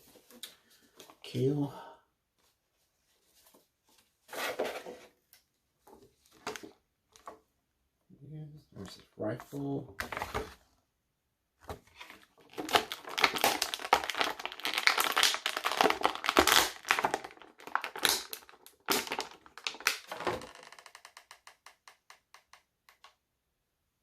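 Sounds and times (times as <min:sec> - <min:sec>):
packaging crinkling and cracking: 0:12.0 - 0:20.8.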